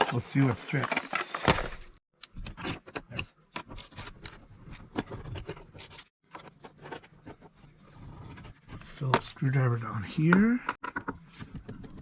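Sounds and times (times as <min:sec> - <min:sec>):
hand tools clicking and scraping: 0:00.0 - 0:04.1.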